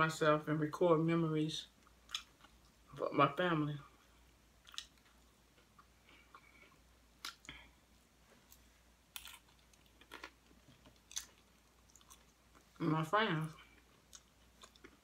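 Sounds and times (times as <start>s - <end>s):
person chewing crunchy chips: 1.8s - 2.8s, 4.3s - 7.7s, 8.5s - 12.8s, 13.5s - 15.0s.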